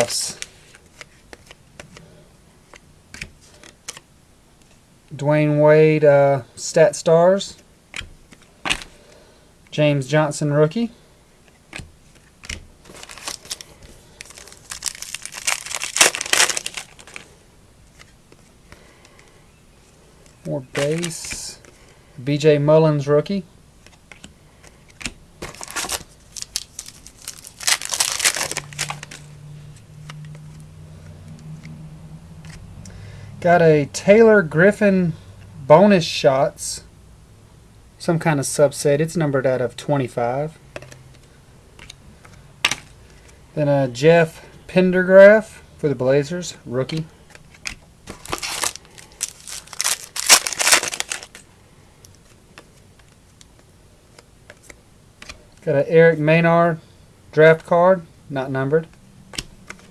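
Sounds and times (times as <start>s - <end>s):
trading cards rustling: 0.0s - 4.8s, 11.4s - 23.1s, 23.8s - 33.0s, 46.8s - 55.7s
low steady hum: 0.0s - 59.9s
foil wrapper tearing and crinkling: 12.9s - 17.3s, 20.8s - 21.4s, 25.4s - 29.3s, 48.1s - 51.4s
cards clicking: 20.2s - 21.8s, 23.8s - 29.3s.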